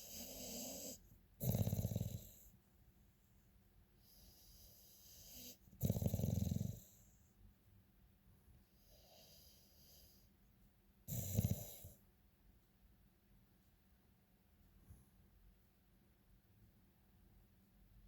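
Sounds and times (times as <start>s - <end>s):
loud snores: 0.0s - 2.4s, 4.1s - 7.0s, 11.1s - 12.0s.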